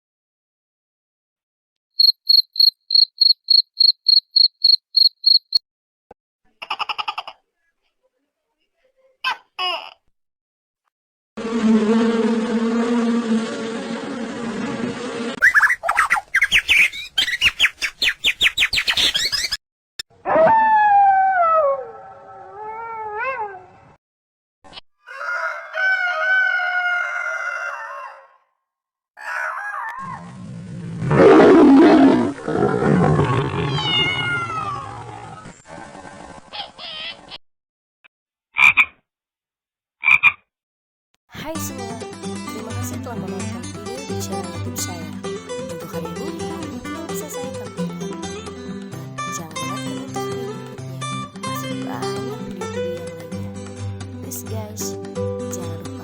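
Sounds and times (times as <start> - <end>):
cricket chirping: 2.0 - 5.6
cat meowing: 33.6 - 34.9.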